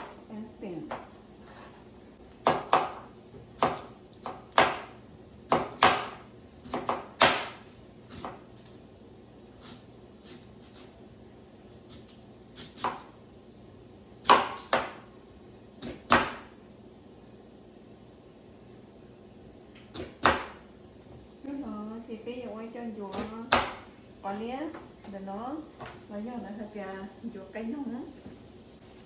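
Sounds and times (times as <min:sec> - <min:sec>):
knife chopping on cutting board: 0:02.4 - 0:08.8, 0:11.9 - 0:13.2, 0:14.2 - 0:15.1, 0:15.8 - 0:16.5, 0:19.9 - 0:20.6, 0:23.1 - 0:23.9.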